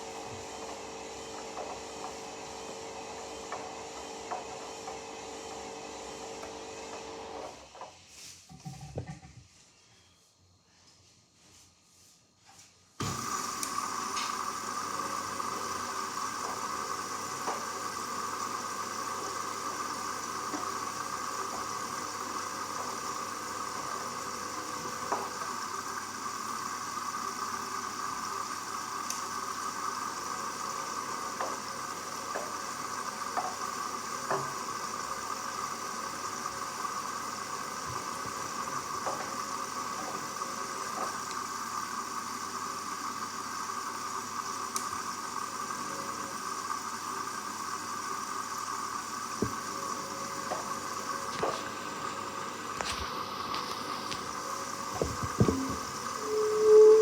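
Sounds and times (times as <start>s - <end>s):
washing machine drum sloshing: 53.6s - 57.0s.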